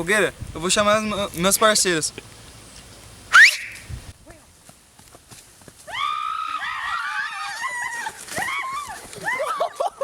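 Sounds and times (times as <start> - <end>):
high wavering call: 3.3 - 3.9
sharp rising whistle: 3.3 - 3.9.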